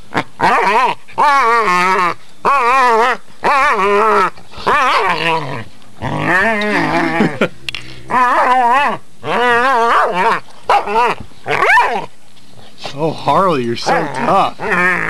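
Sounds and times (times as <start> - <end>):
dog play-growling: 0.1 - 7.4, 13.9 - 15.0.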